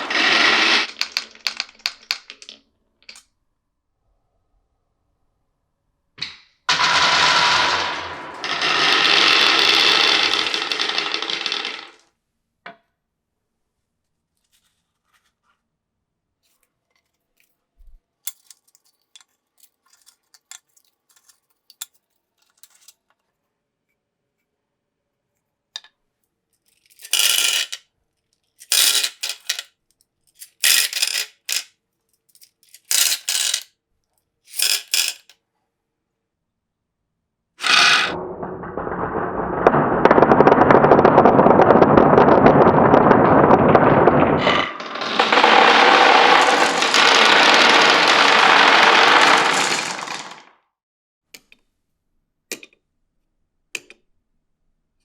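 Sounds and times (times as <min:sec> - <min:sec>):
marbles clattering on track: 0:00.0 - 0:03.2, 0:06.2 - 0:12.0, 0:27.0 - 0:27.8, 0:28.7 - 0:29.6, 0:30.6 - 0:31.6, 0:32.8 - 0:33.6, 0:34.6 - 0:35.3, 0:37.6 - 0:50.5
marbles rolling on wooden track: 0:00.0 - 0:03.2, 0:06.2 - 0:12.1, 0:27.0 - 0:27.8, 0:28.7 - 0:29.7, 0:30.6 - 0:31.6, 0:32.8 - 0:33.6, 0:34.6 - 0:35.3, 0:37.6 - 0:50.5.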